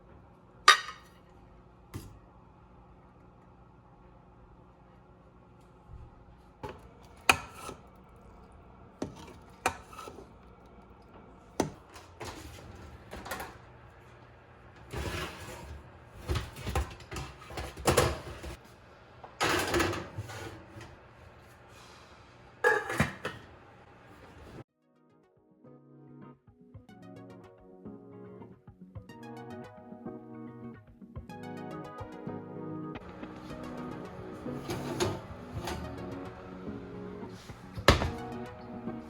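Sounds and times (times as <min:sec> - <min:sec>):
cookware and utensils clattering: 0:00.7 - 0:01.2, 0:06.6 - 0:07.9, 0:09.0 - 0:10.4, 0:14.9 - 0:18.6, 0:19.4 - 0:20.9, 0:22.6 - 0:23.5, 0:34.5 - 0:36.0.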